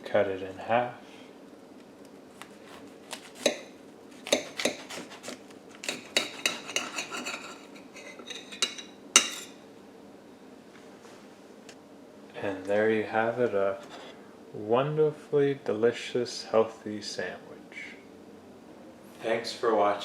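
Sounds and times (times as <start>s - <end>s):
knife sawing through bread: 2.6s - 3.5s, 4.2s - 7.8s.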